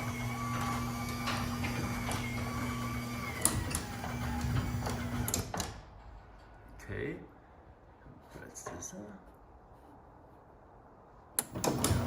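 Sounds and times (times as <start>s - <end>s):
garage door clicks and rattles: 0.0s - 6.7s, 11.4s - 12.0s
garage door opener motor humming: 0.0s - 6.7s, 11.4s - 12.0s.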